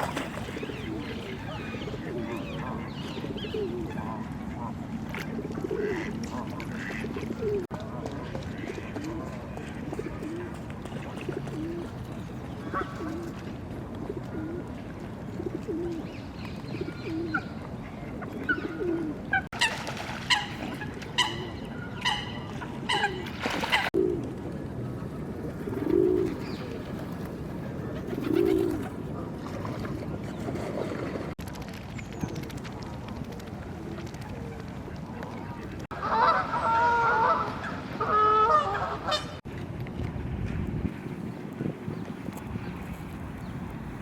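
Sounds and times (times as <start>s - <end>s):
pigeons cooing: 0.3s - 4.2s, 5.3s - 7.7s, 11.2s - 12.0s, 18.4s - 19.4s, 25.2s - 29.0s.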